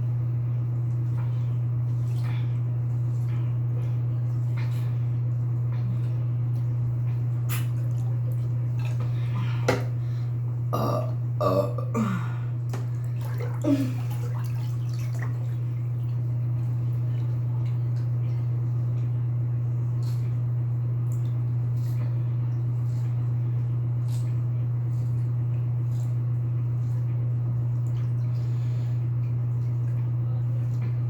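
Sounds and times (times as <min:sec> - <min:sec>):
steady low hum: 0:00.0 - 0:31.0
man burping: 0:10.7 - 0:12.4.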